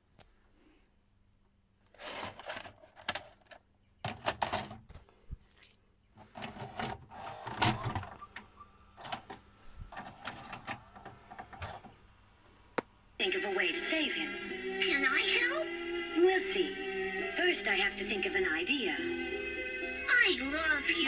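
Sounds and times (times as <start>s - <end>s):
video player mechanism clicking: 9.0s - 11.9s.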